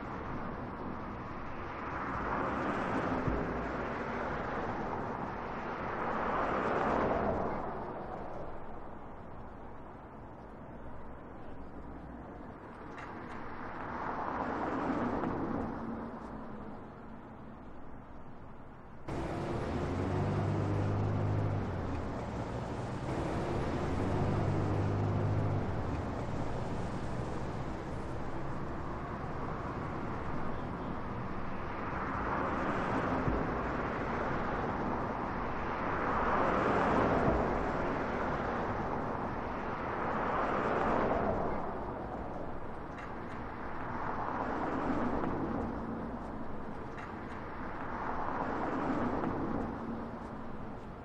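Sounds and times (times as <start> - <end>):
vehicles passing: 0.0 - 51.0
low engine hum: 19.1 - 35.8.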